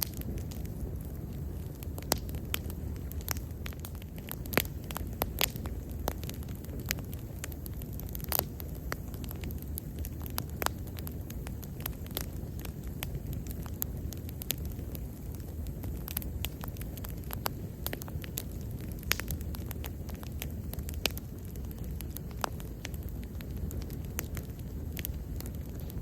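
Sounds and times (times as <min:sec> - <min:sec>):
bonfire flames rumbling: 0:00.0 - 0:26.0
fire crackling and popping: 0:00.0 - 0:26.0.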